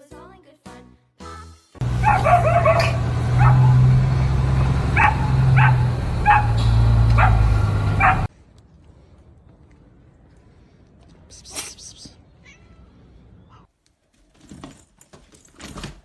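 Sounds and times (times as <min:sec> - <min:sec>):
dog yipping: 0:02.0 - 0:03.8, 0:04.9 - 0:06.6, 0:07.2 - 0:08.3.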